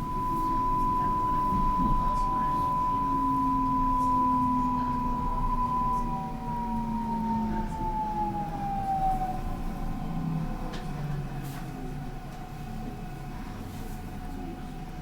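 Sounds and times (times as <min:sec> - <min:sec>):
high-pitched whine: 0:00.0 - 0:10.2
electric train rumbling: 0:00.0 - 0:13.0.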